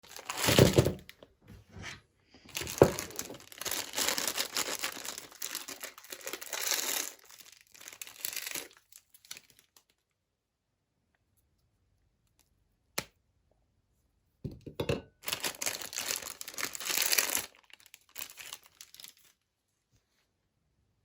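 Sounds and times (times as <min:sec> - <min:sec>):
packaging crinkling and tearing: 0:00.0 - 0:01.2, 0:02.5 - 0:10.0, 0:15.2 - 0:19.4.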